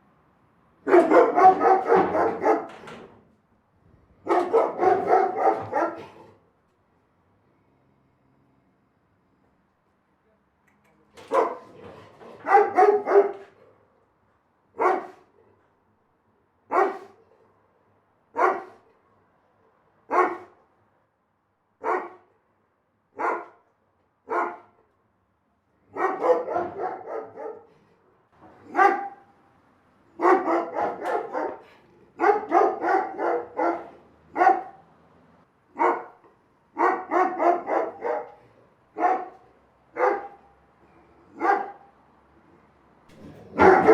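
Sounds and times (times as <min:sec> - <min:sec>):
big dog barking: 0:00.8 - 0:03.0, 0:04.2 - 0:06.4, 0:11.2 - 0:13.9, 0:14.8 - 0:15.5, 0:16.7 - 0:17.5, 0:18.3 - 0:19.0, 0:20.0 - 0:20.6, 0:21.8 - 0:22.3, 0:23.1 - 0:24.8, 0:25.8 - 0:27.9, 0:28.5 - 0:29.4, 0:30.1 - 0:34.9, 0:35.7 - 0:42.0, 0:43.1 - 0:43.9.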